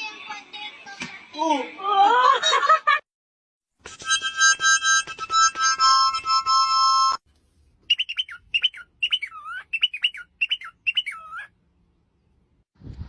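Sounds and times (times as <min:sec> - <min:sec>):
bird chirping: 0:07.8 - 0:12.4.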